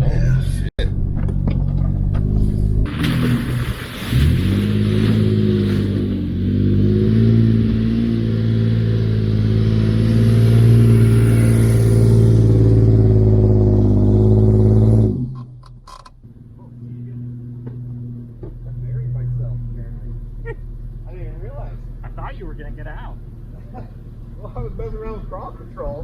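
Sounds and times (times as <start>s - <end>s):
wheels churning in sand: 2.4s - 13.2s
engine revving high: 2.4s - 15.5s.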